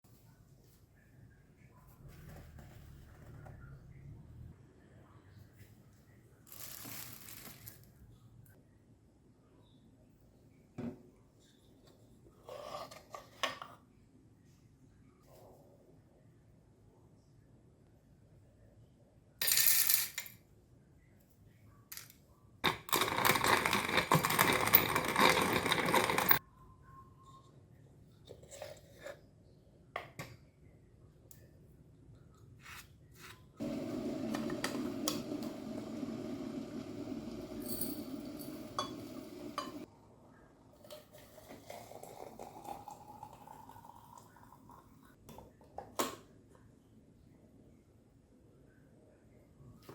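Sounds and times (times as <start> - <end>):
hand grinder crunching coffee beans: 22.9 - 26.4.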